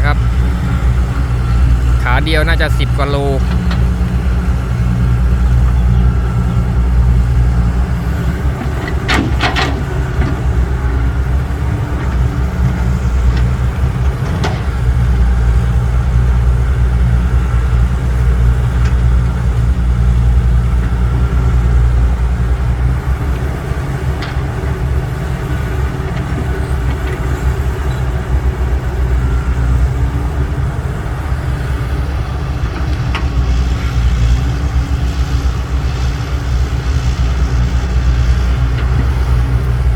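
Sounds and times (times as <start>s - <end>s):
diesel engine running: 0.0s - 39.9s
clatter: 8.6s - 10.6s.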